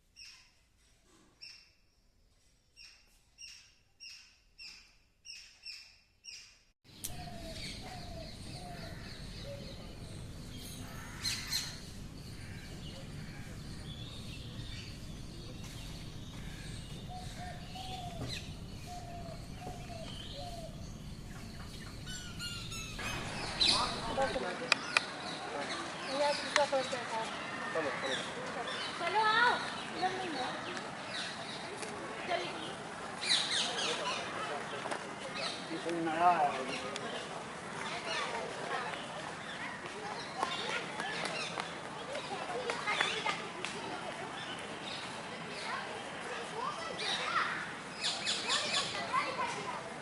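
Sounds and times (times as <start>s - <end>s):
bird chirps: 0.1s - 25.4s.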